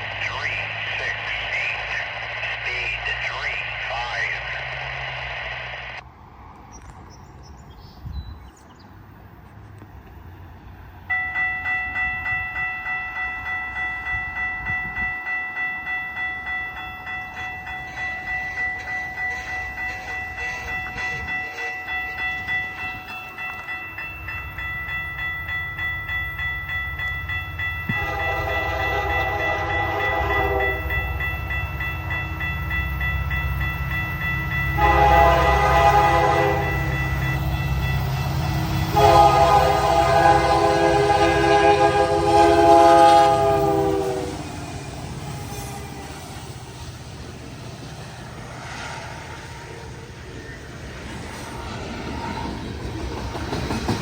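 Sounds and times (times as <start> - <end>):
crossing bell ringing: 11.0 - 46.4
locomotive rumble: 16.9 - 54.0
train air horn blast: 27.9 - 30.9, 34.8 - 36.8, 38.9 - 44.5.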